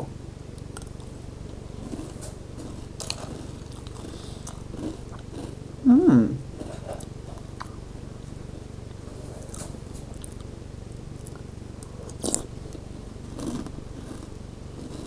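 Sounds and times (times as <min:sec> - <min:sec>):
steady low hum: 0:00.0 - 0:15.0
person chewing crunchy cereal: 0:00.7 - 0:05.6, 0:08.9 - 0:10.5, 0:11.2 - 0:15.0.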